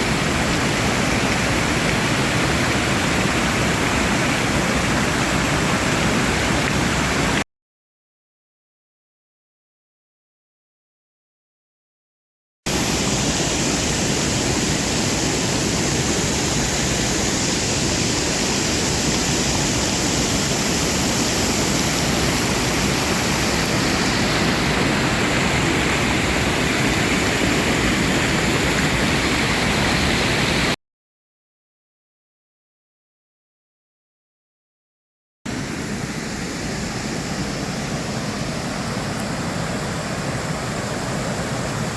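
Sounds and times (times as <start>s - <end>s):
waterfall rushing: 0.0s - 7.4s, 12.7s - 30.8s, 35.5s - 41.9s.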